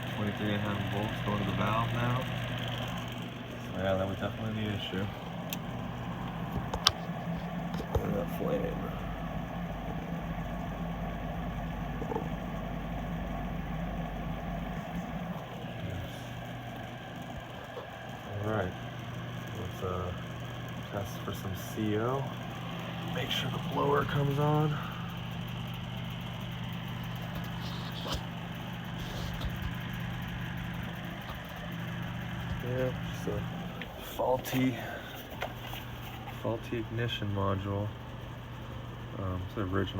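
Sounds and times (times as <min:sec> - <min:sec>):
gas furnace humming: 0:00.0 - 0:39.9.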